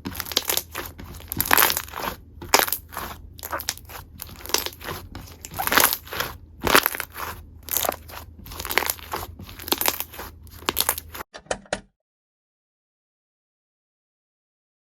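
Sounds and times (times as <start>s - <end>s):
slime squishing and popping: 0.0s - 11.2s.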